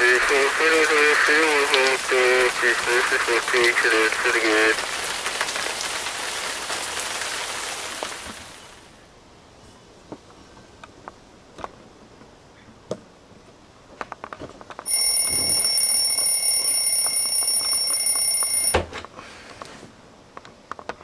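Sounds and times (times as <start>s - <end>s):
shrill electronic alarm tone: 14.9s - 18.8s.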